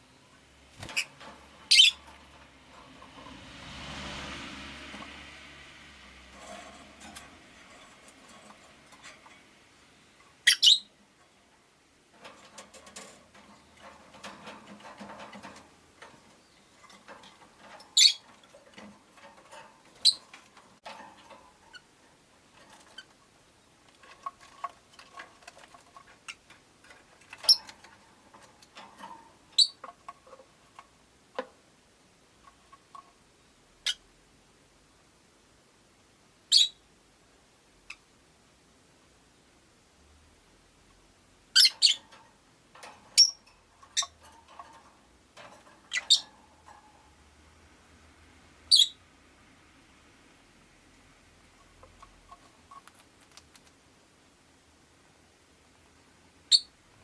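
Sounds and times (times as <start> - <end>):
lovebirds chirping: 0.0 - 2.1, 10.0 - 11.4, 17.9 - 18.2, 20.0 - 20.3, 29.6 - 29.8, 41.5 - 42.0, 45.9 - 46.3, 48.7 - 49.0, 56.5 - 56.7
quiet bird twittering: 1.7 - 2.0, 10.4 - 10.9.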